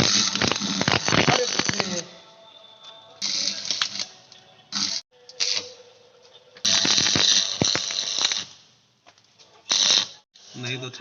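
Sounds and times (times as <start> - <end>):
arc welding crackling and hissing: 0.0 - 2.1, 3.2 - 5.8, 6.6 - 8.7, 9.6 - 11.0.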